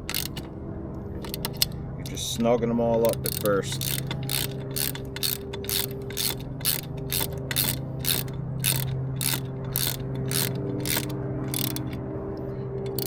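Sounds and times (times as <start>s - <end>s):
ratchet wrench clicking: 0.0s - 0.5s, 1.2s - 1.7s, 3.0s - 12.0s, 12.8s - 13.0s
steady low hum: 0.0s - 13.0s.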